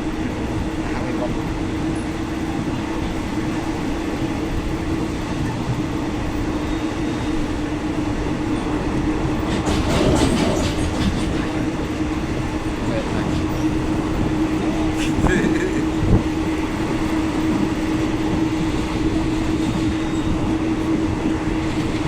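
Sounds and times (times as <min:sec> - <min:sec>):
train rolling rumble: 0:00.0 - 0:22.0
wheels clacking over rail joints: 0:03.0 - 0:15.1.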